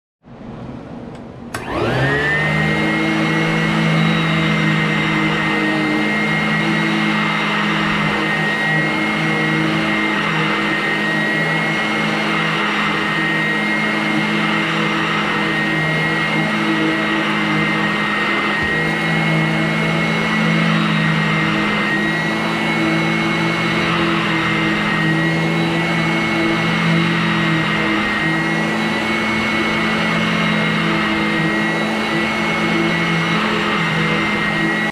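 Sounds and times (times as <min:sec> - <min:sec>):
vacuum cleaner motor whine: 0:00.9 - 0:34.9
vacuum cleaner switch click: 0:01.1 - 0:02.1.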